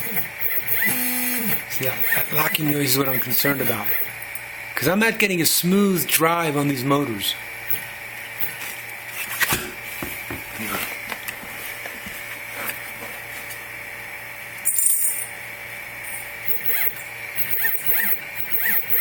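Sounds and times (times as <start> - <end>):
stepper motors whining and buzzing: 0.0 - 4.4, 16.4 - 19.0.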